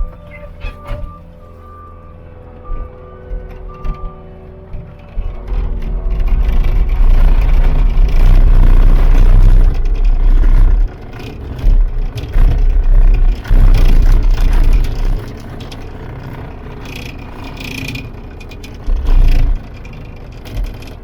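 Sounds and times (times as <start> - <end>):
diesel engine running under load: 0.0 - 21.0
machine clattering: 2.6 - 21.0.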